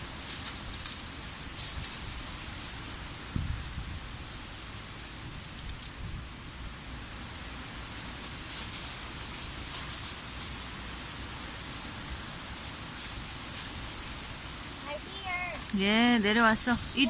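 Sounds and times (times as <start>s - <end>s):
wind rushing through trees: 0.0s - 17.0s
wind buffeting microphone: 3.2s - 4.5s.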